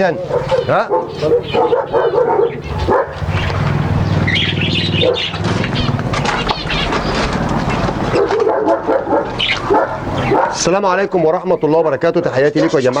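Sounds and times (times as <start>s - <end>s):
birds chirping: 0.0s - 13.0s
birds fluttering wings: 5.2s - 8.6s.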